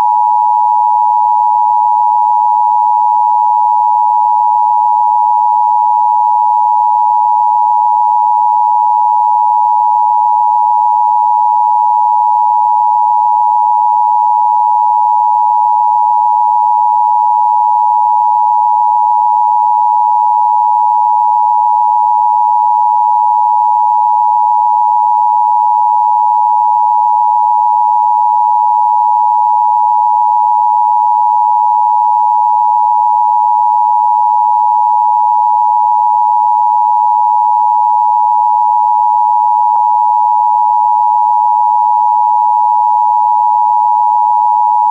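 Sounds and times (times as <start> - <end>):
two-tone electronic alert hum: 0.0 - 30.8, 44.4 - 44.9.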